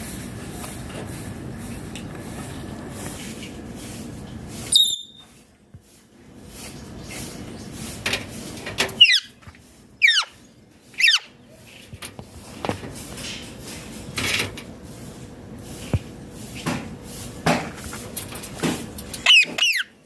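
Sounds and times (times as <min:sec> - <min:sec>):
parrot shrieking and squawking: 0:09.0 - 0:09.4, 0:10.0 - 0:10.4, 0:11.0 - 0:11.4, 0:19.2 - 0:20.0.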